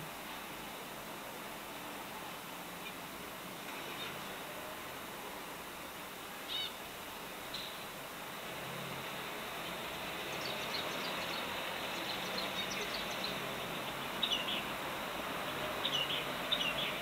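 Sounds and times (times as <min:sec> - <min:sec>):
steady background hiss: 0:00.0 - 0:17.0
small birds chirping: 0:09.6 - 0:17.0.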